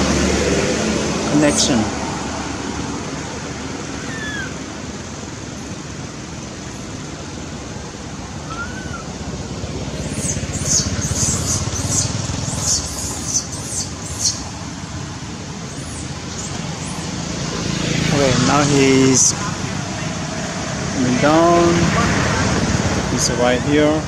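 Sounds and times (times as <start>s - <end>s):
traffic noise: 0.0s - 24.0s
baby monkey squealing: 4.0s - 4.6s, 8.5s - 9.1s, 10.1s - 14.4s.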